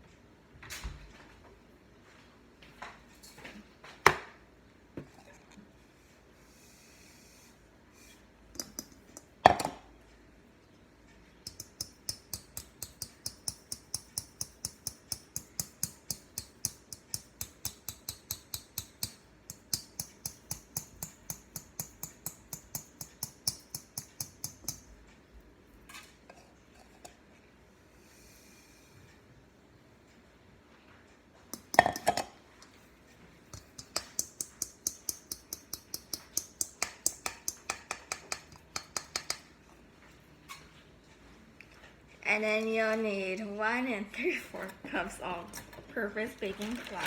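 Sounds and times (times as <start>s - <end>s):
kitchen utensils knocking: 31.6s - 32.3s.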